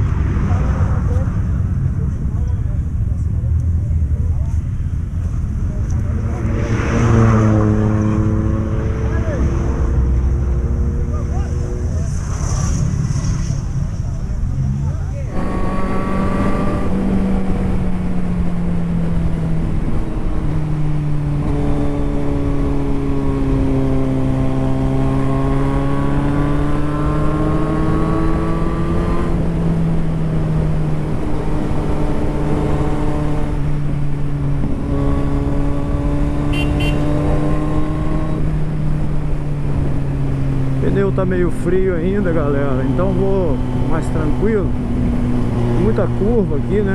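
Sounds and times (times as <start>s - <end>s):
motorcycle engine running: 34.2s - 37.5s.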